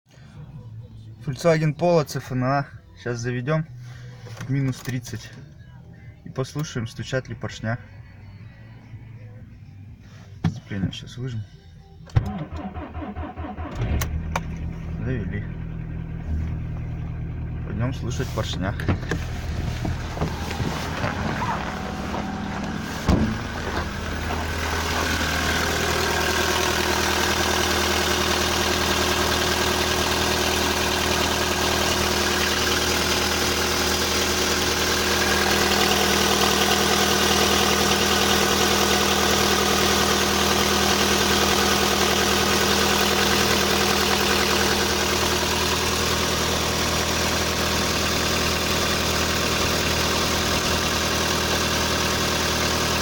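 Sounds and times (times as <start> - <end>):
car engine idling: 12.2 - 53.0
thump: 22.1 - 23.9.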